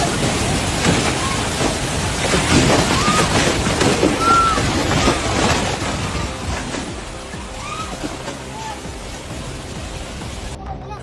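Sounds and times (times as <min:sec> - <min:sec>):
rushing water: 0:00.0 - 0:11.0
high cries or shouts: 0:02.8 - 0:09.1.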